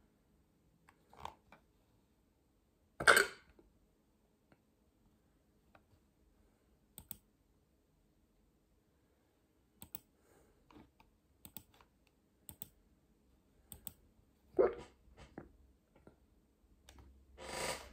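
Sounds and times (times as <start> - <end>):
sharp clicks: 7.0 - 7.2.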